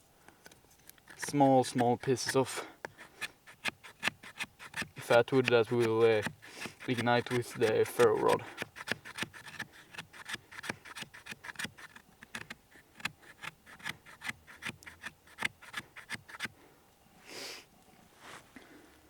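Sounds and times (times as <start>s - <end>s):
knife scraping wood: 0.8s - 16.5s
soft rustles: 17.2s - 19.0s.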